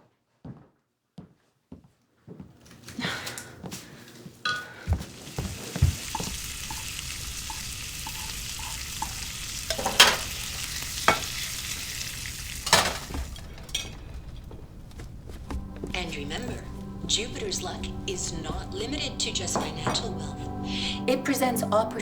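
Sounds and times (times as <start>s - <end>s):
food sizzling in a pan: 4.5s - 20.8s
utensil clinking against pan: 6.0s - 20.4s.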